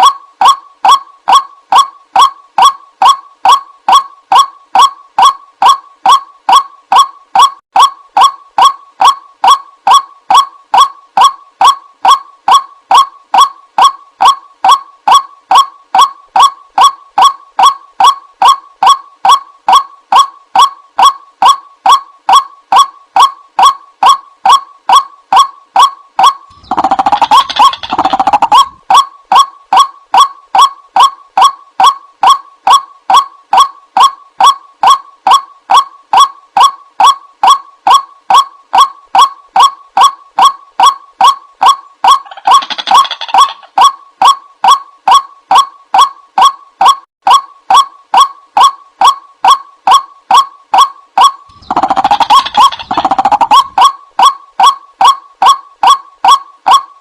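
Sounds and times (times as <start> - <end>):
waterhen calling: 25.8 - 29.4, 42.0 - 43.9, 51.5 - 54.0.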